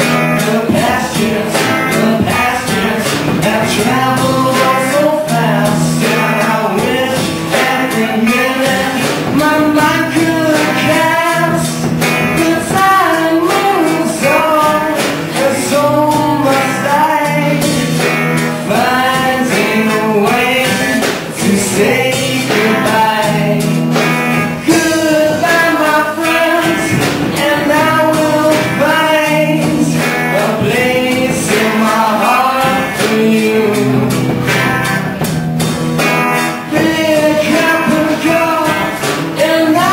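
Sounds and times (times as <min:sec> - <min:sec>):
guitar accompaniment: 0:00.0 - 0:39.9
person singing: 0:00.0 - 0:39.9
steady bass line: 0:00.0 - 0:39.9.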